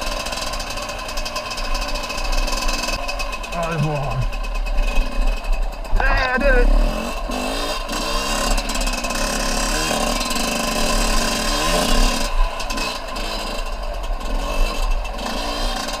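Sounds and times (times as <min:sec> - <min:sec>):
dirt bike engine revving: 0:00.0 - 0:16.0.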